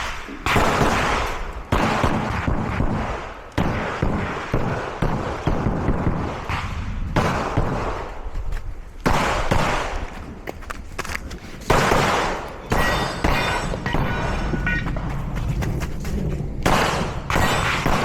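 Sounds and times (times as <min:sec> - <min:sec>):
pistol firing rapid shots: 0:00.0 - 0:08.2, 0:09.0 - 0:10.1, 0:11.7 - 0:14.5, 0:16.6 - 0:18.0.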